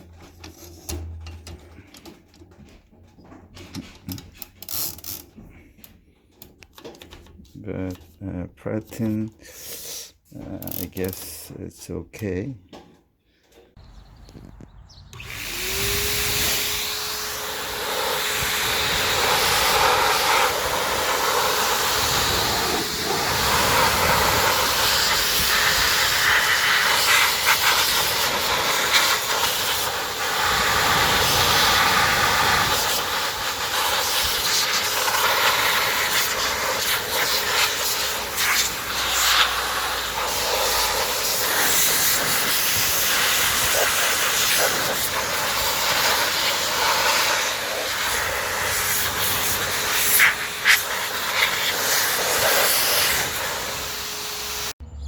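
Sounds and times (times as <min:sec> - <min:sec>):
rushing air hiss: 0:09.5 - 0:10.2, 0:15.2 - 0:54.7.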